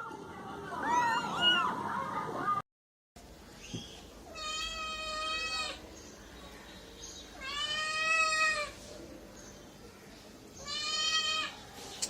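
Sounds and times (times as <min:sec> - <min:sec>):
cat meowing: 0:04.3 - 0:05.8, 0:07.4 - 0:08.8, 0:10.6 - 0:11.6.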